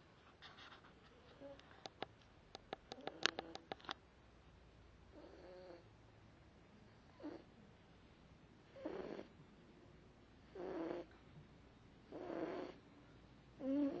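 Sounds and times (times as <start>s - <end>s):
dog snoring: 5.1s - 5.9s, 7.0s - 7.5s, 8.7s - 9.3s, 10.4s - 11.1s, 12.1s - 12.8s, 13.6s - 14.0s.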